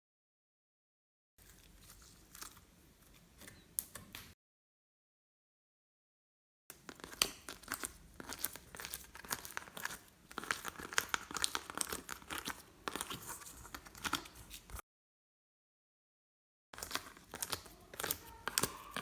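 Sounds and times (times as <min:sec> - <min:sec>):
slime crackling and popping: 0:16.8 - 0:19.0.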